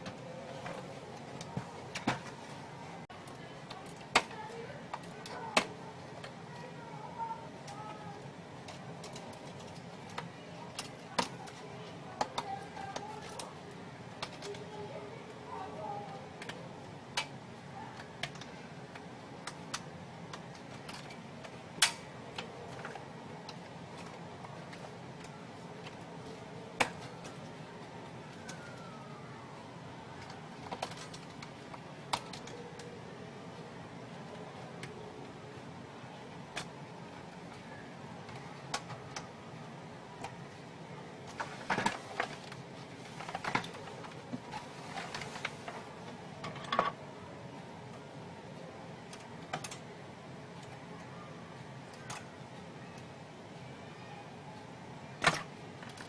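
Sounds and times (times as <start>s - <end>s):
low background hum: 0.0s - 56.0s
light clicks of small parts: 16.4s - 17.4s, 51.9s - 53.1s.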